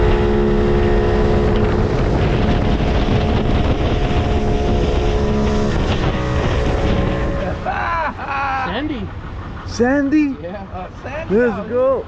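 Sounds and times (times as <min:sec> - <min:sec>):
wind on microphone: 0:00.0 - 0:08.2
boat engine running: 0:00.0 - 0:12.0.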